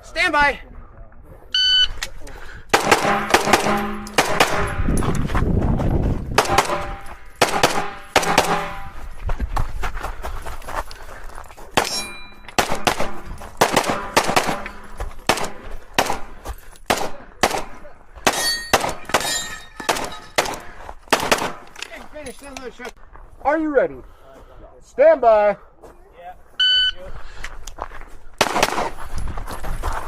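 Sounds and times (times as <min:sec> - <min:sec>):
airsoft pistol shots: 0:02.7 - 0:04.9, 0:06.4 - 0:08.9, 0:12.6 - 0:16.3, 0:19.9 - 0:21.6, 0:28.4 - 0:29.0
pellets clanging on steel targets: 0:02.8 - 0:05.1, 0:06.4 - 0:09.0, 0:11.8 - 0:17.6, 0:18.2 - 0:20.7.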